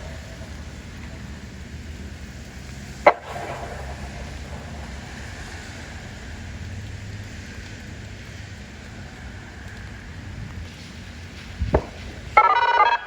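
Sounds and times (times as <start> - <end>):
rain: 0.0 - 13.0
wind: 0.0 - 13.0.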